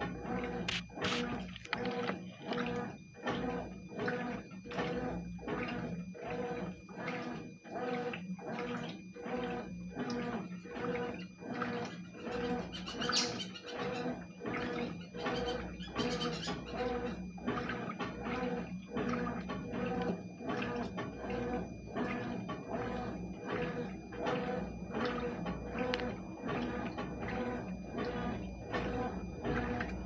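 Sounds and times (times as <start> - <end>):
motor hum: 0.0 - 30.0
washing machine water swishing: 0.0 - 30.0.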